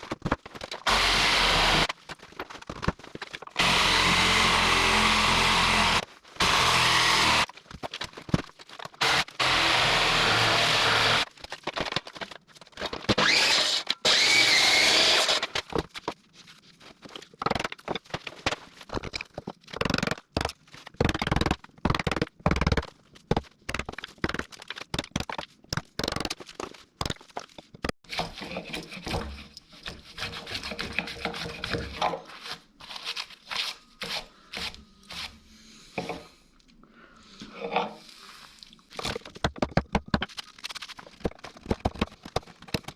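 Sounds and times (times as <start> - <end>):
power saw cutting wood: 0.9 - 1.9, 3.6 - 7.5, 9.0 - 11.2, 13.2 - 15.5
tools scraping and knocking on wood: 22.6 - 35.4, 36.0 - 36.4, 37.4 - 38.1.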